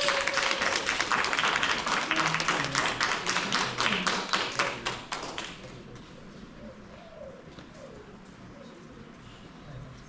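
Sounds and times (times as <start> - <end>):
audience clapping: 0.0 - 6.1
faint voices: 1.6 - 10.0.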